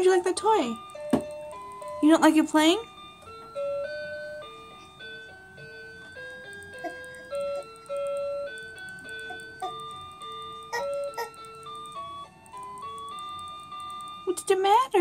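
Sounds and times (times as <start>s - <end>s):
toy chiming tune: 0.0s - 15.0s
sharp clicks: 6.2s - 15.0s.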